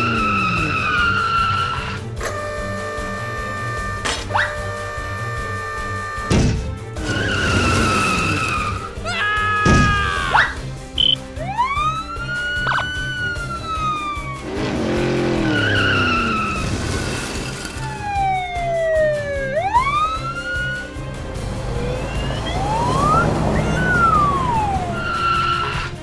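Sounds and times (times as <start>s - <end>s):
background music: 0.0s - 26.0s
siren-like glides: 10.4s - 26.0s.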